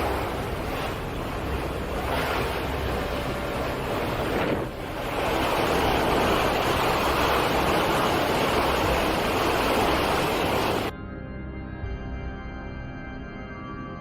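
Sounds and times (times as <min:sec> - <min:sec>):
dense storm noise rush: 0:00.0 - 0:10.9
ambient organ-like music: 0:10.9 - 0:14.0.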